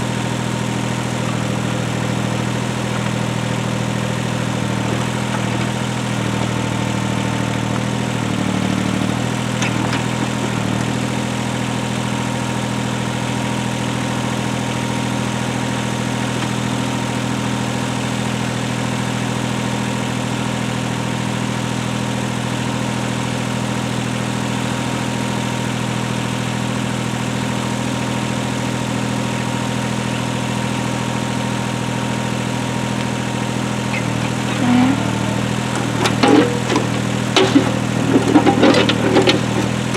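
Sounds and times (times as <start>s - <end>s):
heavy equipment engine running: 0.0s - 19.1s, 27.2s - 39.9s.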